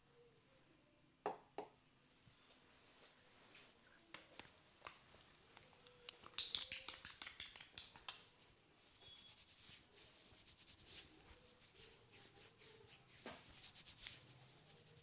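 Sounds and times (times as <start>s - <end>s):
hands slapping and clicking: 4.1s - 8.4s
hands rubbing hair and skin: 4.3s - 15.0s.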